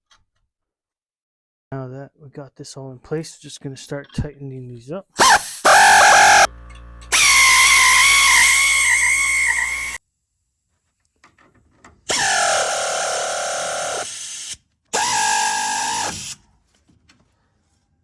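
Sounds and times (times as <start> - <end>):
power driver motor whine: 5.2 - 10.0, 15.0 - 16.2.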